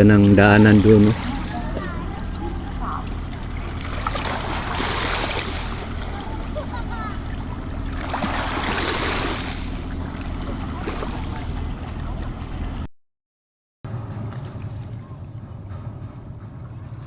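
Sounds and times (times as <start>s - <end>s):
waves washing at shore: 0.0s - 12.8s
low engine hum: 0.0s - 12.9s, 13.9s - 17.0s
wind: 0.0s - 12.9s, 13.9s - 17.0s.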